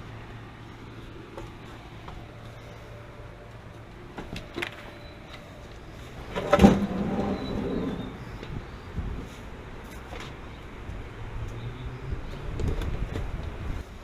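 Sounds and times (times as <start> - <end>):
steady low hum: 0.0 - 11.5.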